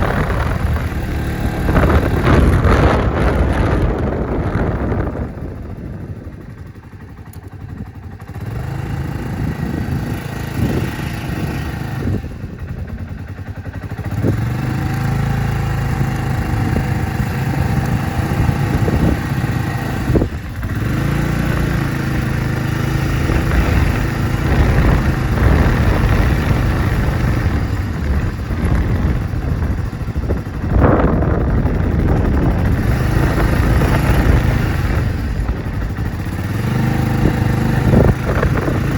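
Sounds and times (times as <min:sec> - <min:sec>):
scooter engine revving: 0:00.0 - 0:38.9.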